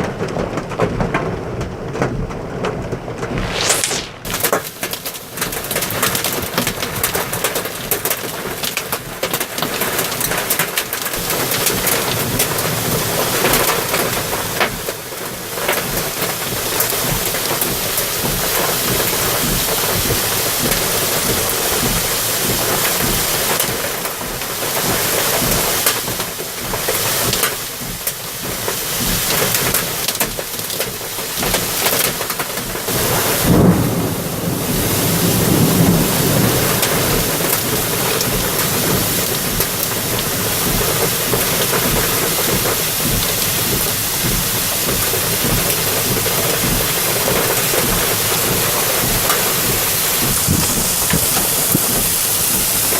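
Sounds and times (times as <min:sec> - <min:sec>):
heavy rain pouring: 0:00.0 - 0:52.9
thunder rumbling: 0:03.0 - 0:06.8, 0:32.6 - 0:52.9.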